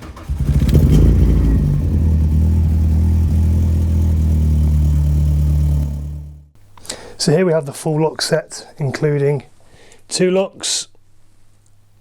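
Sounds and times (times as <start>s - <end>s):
car engine humming: 0.0s - 6.6s.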